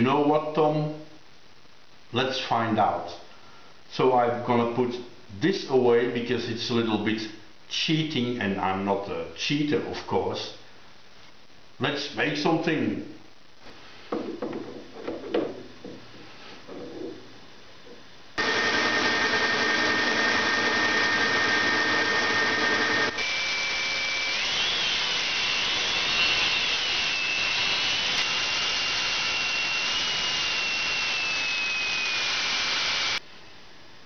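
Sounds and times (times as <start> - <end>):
hissing cut with wavering whine: 18.4 - 33.2.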